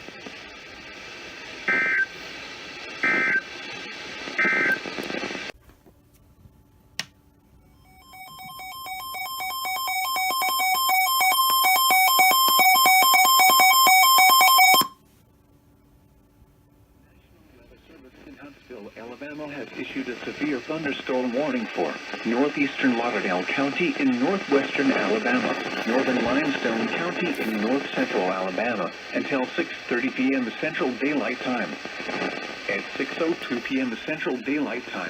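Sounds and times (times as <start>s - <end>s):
broadcast hiss: 0.0s - 35.0s
rapid alternating alarm beeps: 7.8s - 14.9s.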